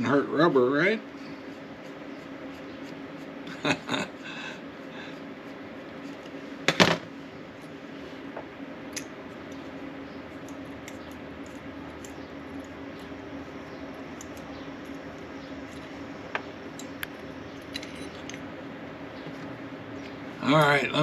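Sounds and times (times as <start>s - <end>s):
steady low hum: 0.0s - 21.0s
objects knocking on a workbench: 6.7s - 7.1s.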